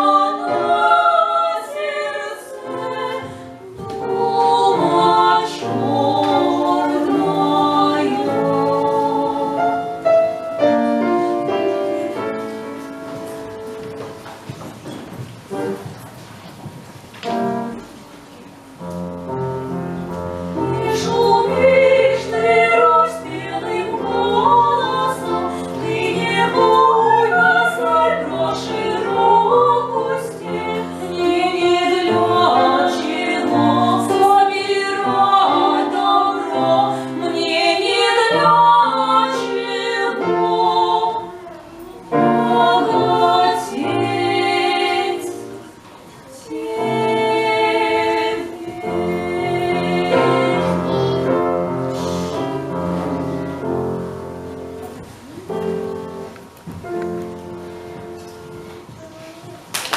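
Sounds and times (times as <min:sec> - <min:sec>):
operatic voices singing: 0:00.0 - 0:12.6, 0:20.4 - 0:54.5
instrumental accompaniment: 0:00.0 - 0:59.9.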